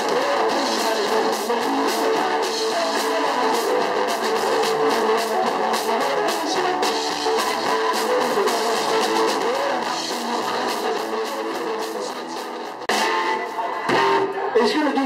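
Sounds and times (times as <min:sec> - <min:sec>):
live band with guitar: 0:00.0 - 0:15.0.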